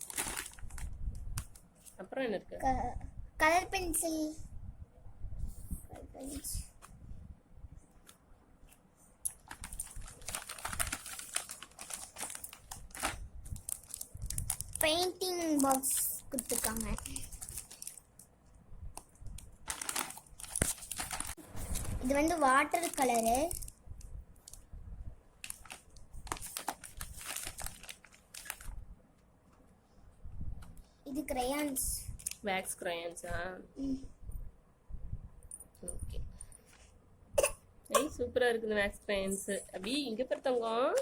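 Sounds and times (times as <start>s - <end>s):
packaging crinkling: 0.0s - 1.9s, 9.3s - 18.3s, 19.0s - 23.8s, 25.4s - 28.8s
small clicks and rustles: 7.9s - 24.7s, 25.4s - 29.7s.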